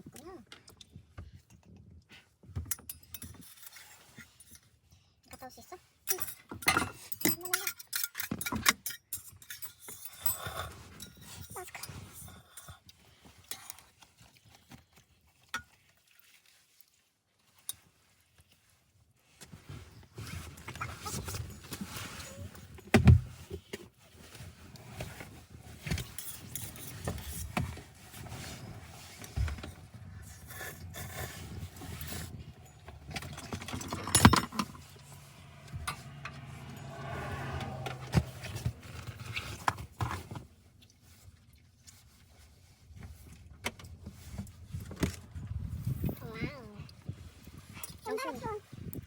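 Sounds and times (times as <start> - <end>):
small objects clinking and rustling: 24.2 - 37.2.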